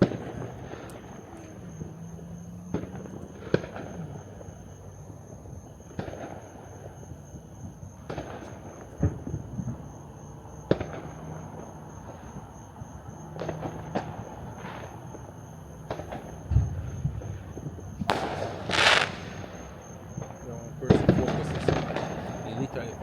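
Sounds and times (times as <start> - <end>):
fireworks crackling: 0.0 - 2.0, 13.3 - 23.0
fireworks bangs: 0.0 - 4.7, 5.8 - 23.0.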